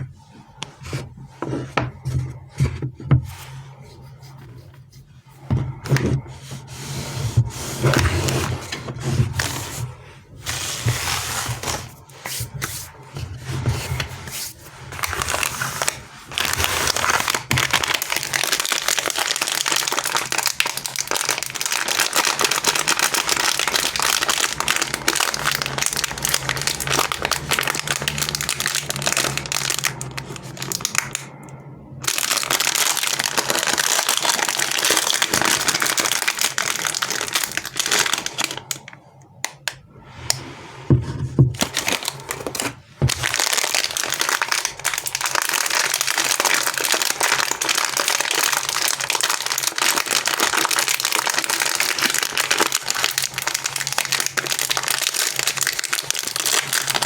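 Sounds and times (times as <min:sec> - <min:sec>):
candy wrappers crinkling: 0:06.2 - 0:39.9, 0:41.6 - 0:57.0.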